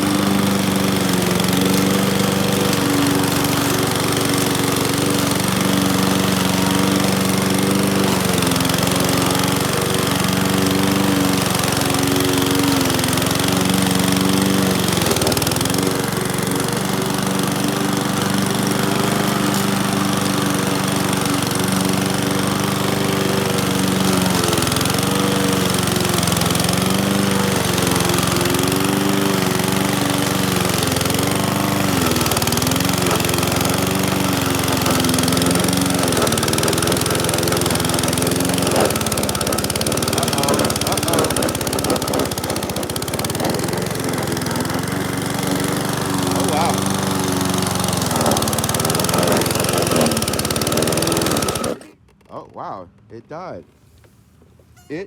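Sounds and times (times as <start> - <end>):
lawn mower engine cutting grass: 0.0 - 52.8.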